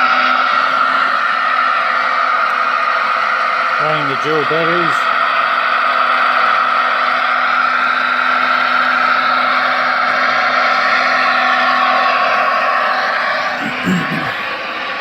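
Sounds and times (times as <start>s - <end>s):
electric motors whirring: 0.0s - 15.0s.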